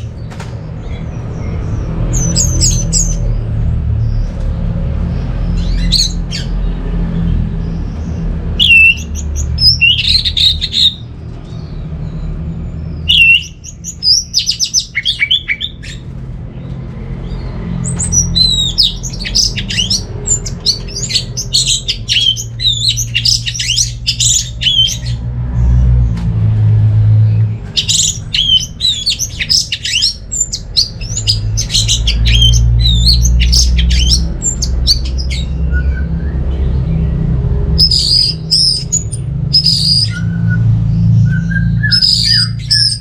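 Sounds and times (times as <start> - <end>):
steady low hum: 0.0 - 39.6
thrush singing whistled notes: 8.6 - 11.1, 12.9 - 16.0, 17.8 - 25.2, 27.8 - 36.8, 37.8 - 43.0.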